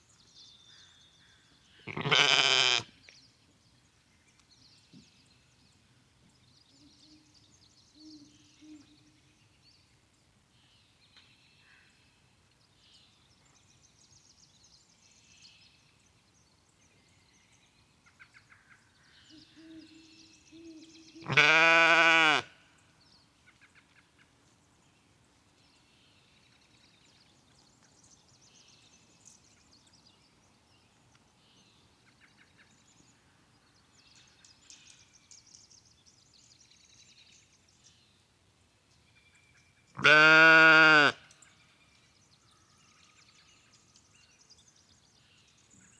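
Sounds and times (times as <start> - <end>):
faint birdsong chirps: 0.0 - 45.9
sheep bleating: 1.9 - 2.9, 21.2 - 22.5, 40.0 - 41.2.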